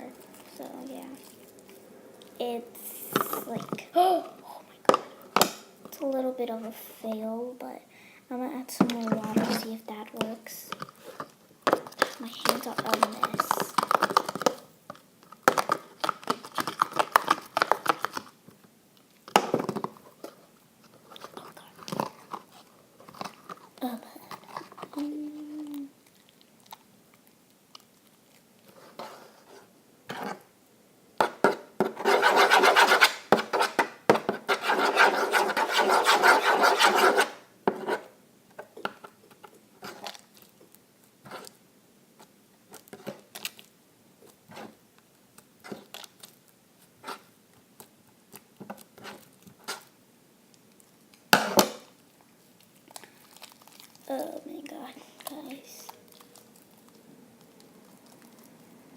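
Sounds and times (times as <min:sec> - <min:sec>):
slime squelching: 0:00.0 - 0:06.9, 0:08.8 - 0:14.7, 0:52.3 - 0:58.9.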